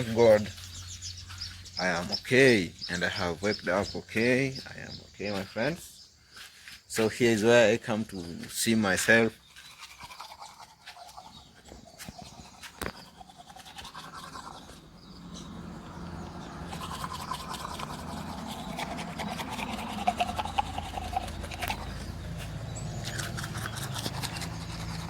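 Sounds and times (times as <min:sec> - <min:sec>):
toothbrush scrubbing teeth: 0:09.1 - 0:14.9, 0:16.4 - 0:25.0.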